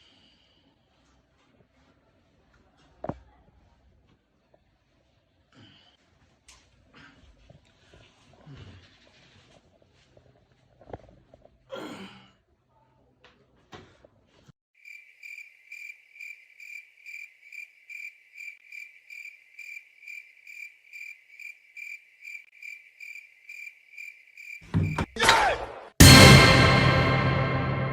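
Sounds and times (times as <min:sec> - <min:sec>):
cricket chirping: 0:14.8 - 0:25.2
loud ringing hit: 0:26.0 - 0:27.9.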